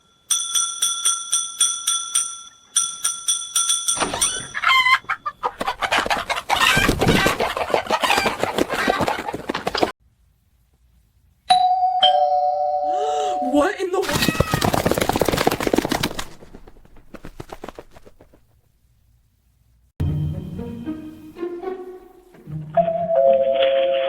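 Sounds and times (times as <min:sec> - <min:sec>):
hens clucking: 0:04.3 - 0:09.9.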